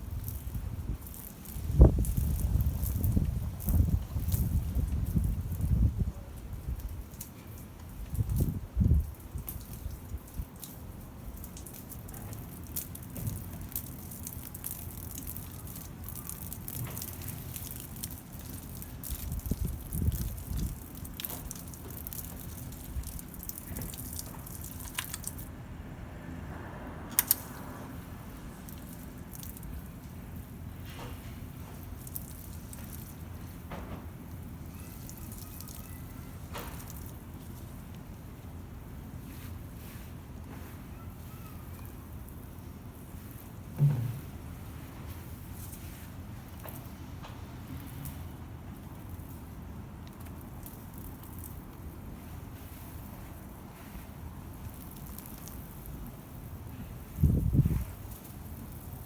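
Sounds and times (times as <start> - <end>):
shower water splashing and dripping: 6.8 - 25.5, 28.3 - 30.5
low thumps: 43.8 - 44.4.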